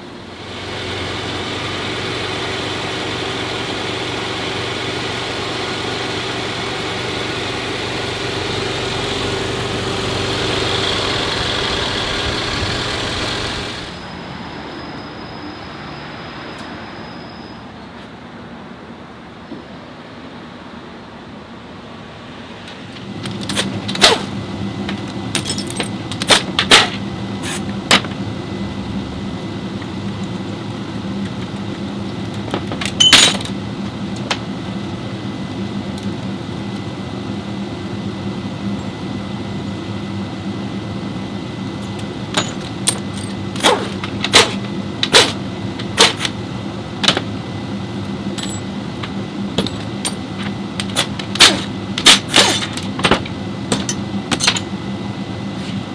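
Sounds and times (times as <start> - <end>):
mechanical hum: 0.0 - 55.9
metallic clinks and knocks: 25.4 - 26.3.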